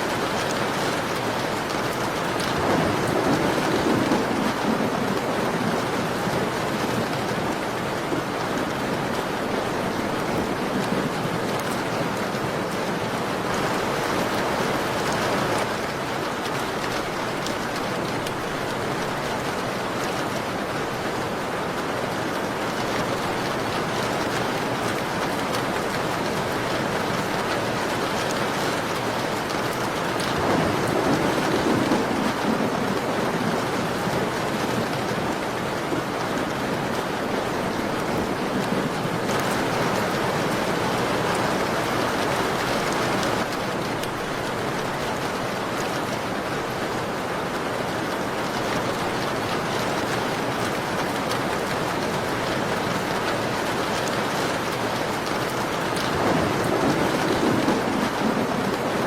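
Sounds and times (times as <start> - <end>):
heavy rain on a window: 0.0 - 59.0.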